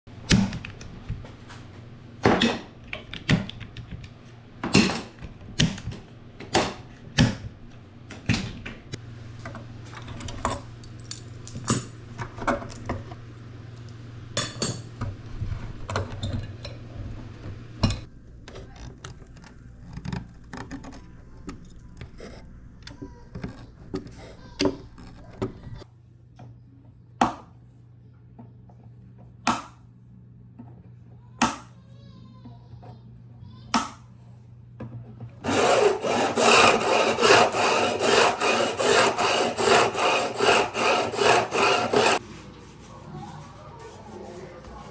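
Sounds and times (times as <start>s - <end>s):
hand tools knocking on wood and metal: 34.8s - 42.2s.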